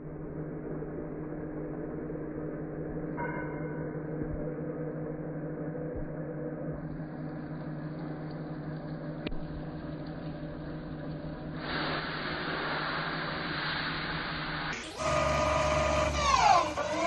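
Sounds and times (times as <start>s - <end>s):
hissy running noise: 8.8s - 17.0s
lathe motor hum: 14.9s - 17.0s.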